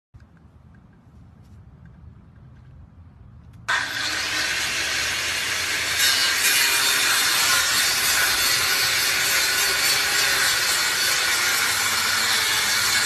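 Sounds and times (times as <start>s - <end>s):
power saw cutting metal: 3.7s - 13.0s.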